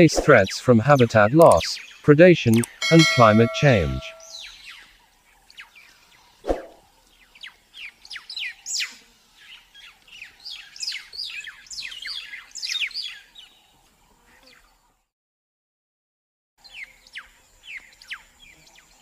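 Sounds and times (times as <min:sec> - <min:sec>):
weaver birds chirping: 0:00.4 - 0:02.1, 0:07.0 - 0:13.8, 0:16.6 - 0:19.0.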